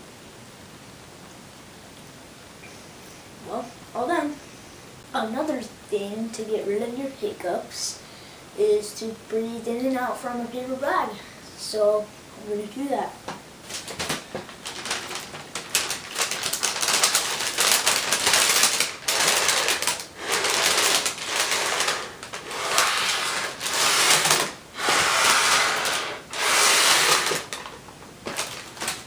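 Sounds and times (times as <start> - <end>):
paper bag rustling: 13.6 - 29.0
heavy breathing into paper bag: 19.0 - 27.5.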